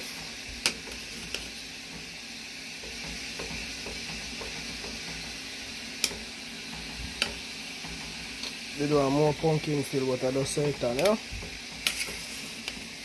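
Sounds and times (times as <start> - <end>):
food sizzling in a pot: 0.0 - 13.0
utensil clicking against pot: 6.0 - 8.6, 10.6 - 12.9.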